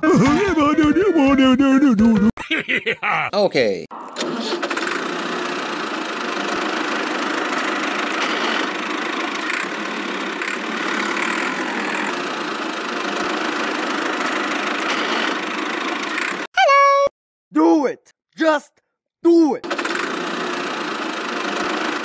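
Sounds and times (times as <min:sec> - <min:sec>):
small engine running steadily: 0:04.6 - 0:16.5, 0:19.7 - 0:22.0.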